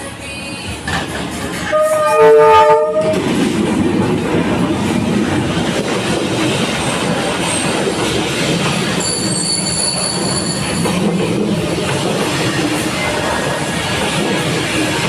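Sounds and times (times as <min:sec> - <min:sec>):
train wheels rumbling on rails: 0:00.6 - 0:15.0
train horn: 0:01.6 - 0:03.2.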